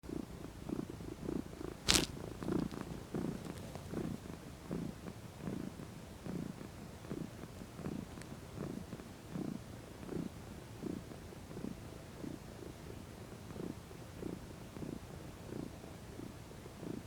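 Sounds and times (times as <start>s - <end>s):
cat purring: 0.1s - 12.8s.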